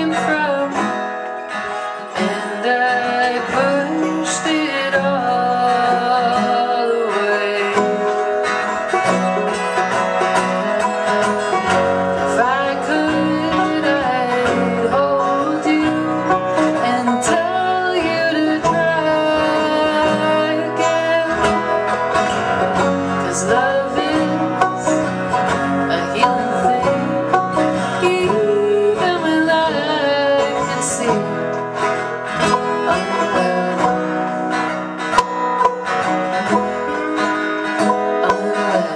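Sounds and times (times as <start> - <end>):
plucked string instruments: 0.0 - 38.9
people singing: 2.2 - 8.0, 12.2 - 21.9, 23.0 - 25.0, 25.6 - 31.4, 37.8 - 38.9.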